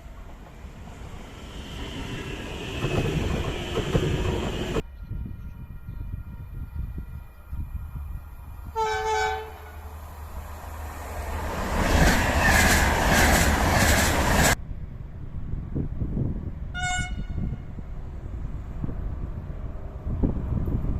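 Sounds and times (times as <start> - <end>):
train passing rushing: 0.0 - 4.8, 9.4 - 14.6
train horn blast: 8.7 - 10.0, 16.8 - 17.7.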